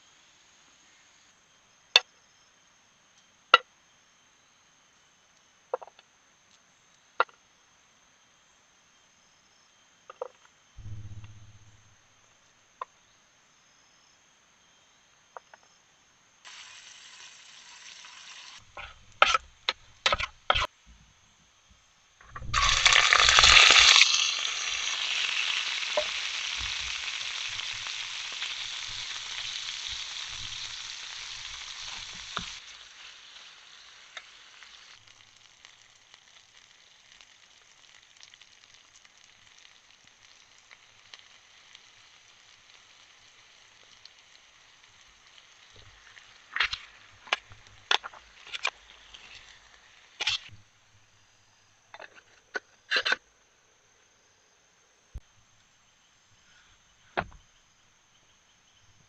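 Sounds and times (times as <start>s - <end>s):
food sizzling in hot oil: 16.4s - 20.7s, 22.2s - 50.6s.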